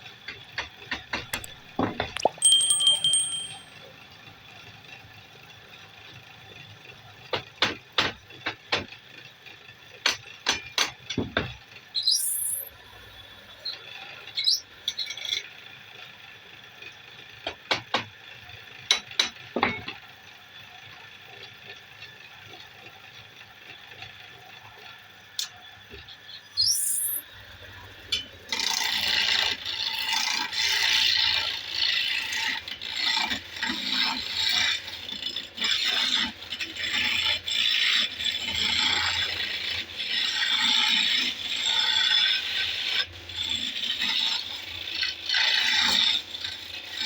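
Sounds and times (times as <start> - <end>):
metal clicks and knocks: 1.0 - 3.6.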